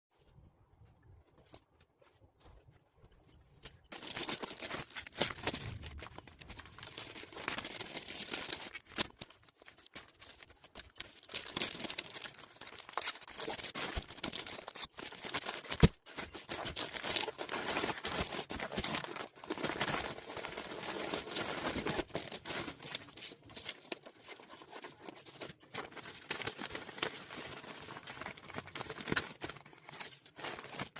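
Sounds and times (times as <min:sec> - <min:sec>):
packaging crinkling and tearing: 0:03.6 - 0:30.9.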